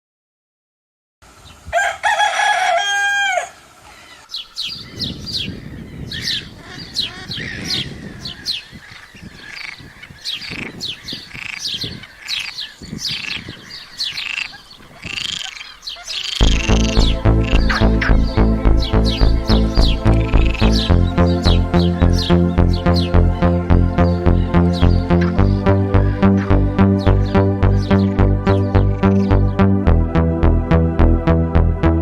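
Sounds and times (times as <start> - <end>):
rooster crowing: 1.7 - 4.3
small birds chirping: 3.8 - 29.6.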